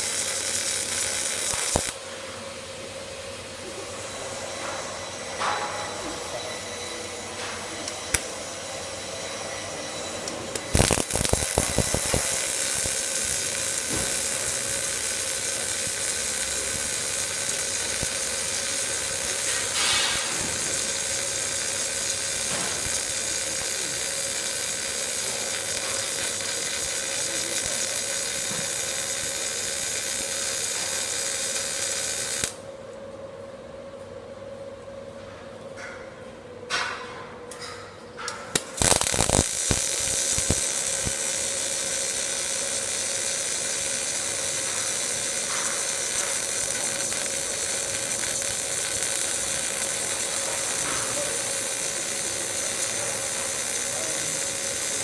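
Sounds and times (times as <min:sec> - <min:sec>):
loud welding crackles: 0:00.0 - 0:02.2, 0:03.7 - 0:32.6, 0:37.6 - 0:55.0
welding arc frying hiss: 0:00.0 - 0:02.4, 0:03.6 - 0:32.6, 0:38.4 - 0:55.0
constant machine hum: 0:00.0 - 0:55.0.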